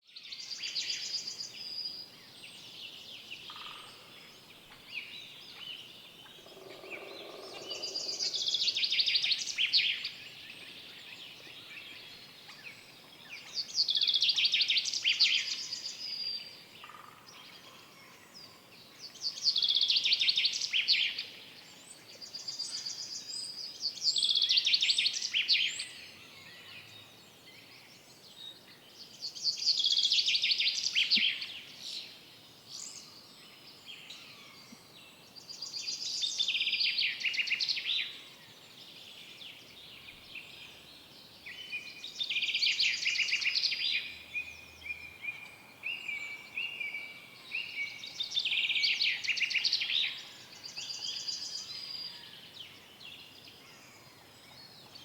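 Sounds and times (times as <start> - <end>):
songbird singing: 0.0 - 55.0.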